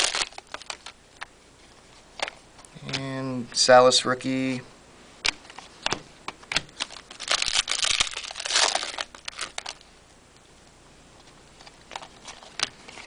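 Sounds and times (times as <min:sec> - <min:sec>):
wrapper crinkling and tearing: 0:00.0 - 0:01.0, 0:06.5 - 0:09.9, 0:11.6 - 0:13.0.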